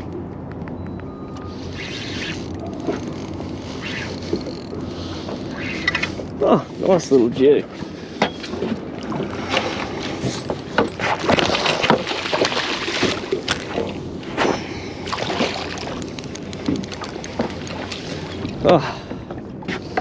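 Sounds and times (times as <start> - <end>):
knocks and clicks on boat: 0.0 - 1.5, 2.3 - 6.4, 7.6 - 20.0
water splashing: 7.8 - 18.7.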